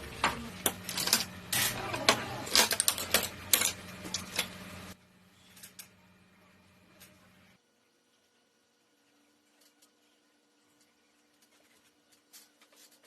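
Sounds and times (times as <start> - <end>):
computer parts clicking and rattling: 0.7 - 4.6.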